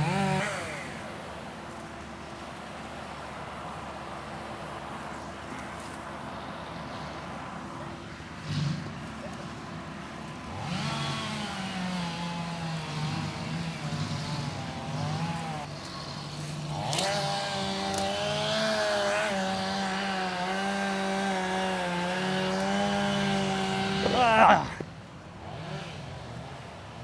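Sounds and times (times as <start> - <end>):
chainsaw running at high revs: 0.0 - 2.5, 8.4 - 26.7.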